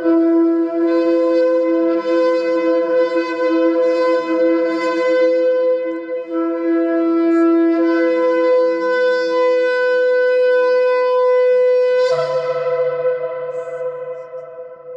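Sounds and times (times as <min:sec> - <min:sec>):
ram's horn blast: 0:11.2 - 0:14.9.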